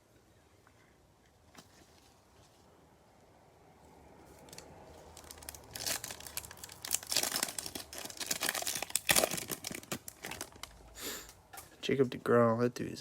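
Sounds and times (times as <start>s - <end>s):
foil wrapper tearing and crinkling: 4.4s - 10.8s.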